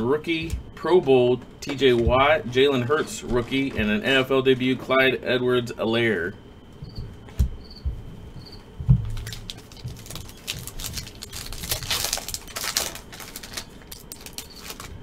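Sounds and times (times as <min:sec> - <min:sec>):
foil wrapper crinkling: 0:09.1 - 0:15.0.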